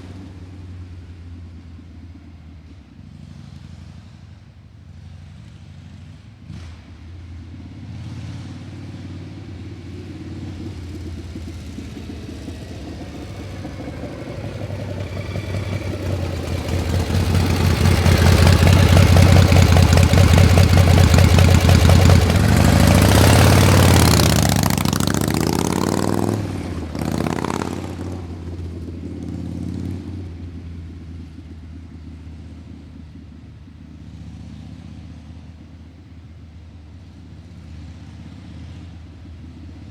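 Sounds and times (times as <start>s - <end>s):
vehicle engine passing by: 2.6s - 36.2s.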